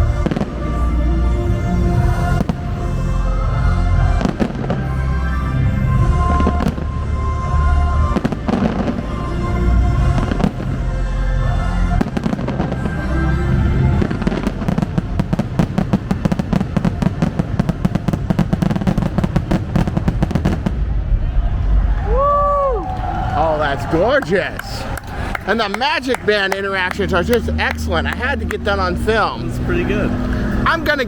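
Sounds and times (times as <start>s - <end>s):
loud show music: 0.0s - 20.5s, 23.4s - 31.0s
fireworks booming: 2.0s - 4.8s, 6.0s - 7.1s, 12.0s - 12.9s, 13.8s - 29.1s.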